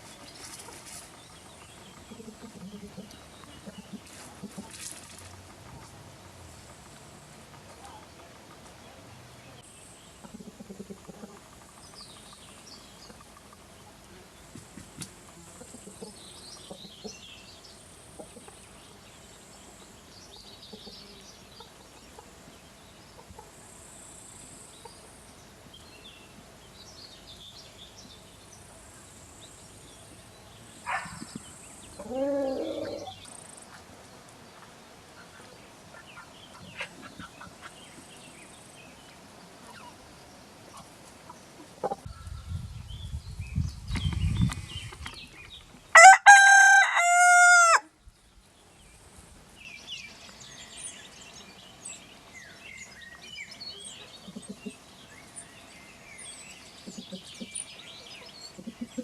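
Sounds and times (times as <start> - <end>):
small birds chirping faintly: 0.0 - 46.6, 47.8 - 59.0
chickens clucking softly: 0.1 - 9.0, 10.1 - 17.4, 18.0 - 18.8, 20.4 - 22.4, 23.0 - 23.8, 30.9 - 38.3, 40.7 - 42.3, 53.7 - 54.9, 56.8 - 59.0
rooster crowing: 46.0 - 47.9.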